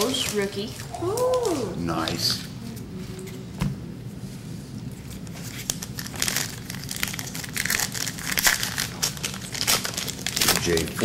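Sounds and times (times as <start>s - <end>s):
card pack wrappers crinkling: 5.1s - 11.0s.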